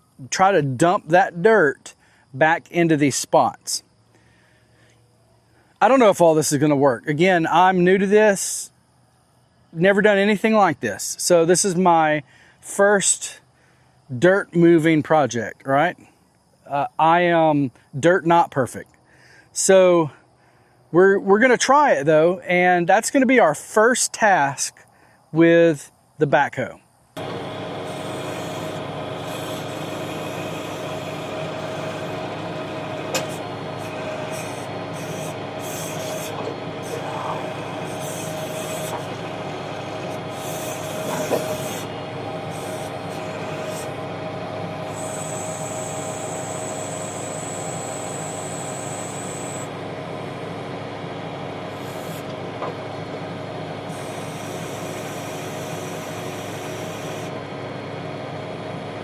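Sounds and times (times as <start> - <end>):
tractor engine running: 27.2 - 59.0
high hydraulic hiss: 27.3 - 44.0, 44.8 - 49.7, 51.7 - 52.3, 53.9 - 57.4.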